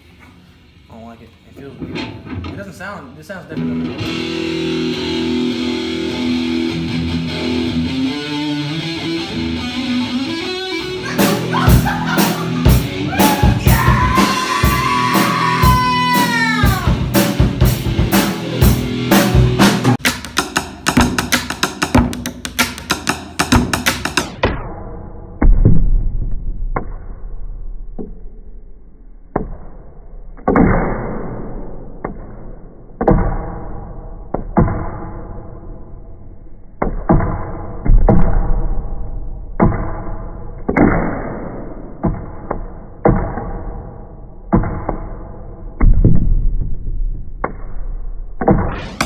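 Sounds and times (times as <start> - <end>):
guitar chords strummed: 3.6 - 20.0.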